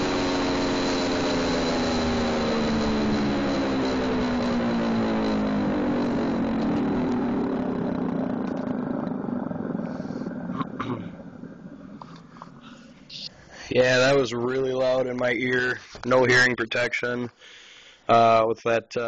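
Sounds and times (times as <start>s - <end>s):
siren wailing sliding lower: 0.0s - 10.6s
engine running: 0.0s - 13.3s.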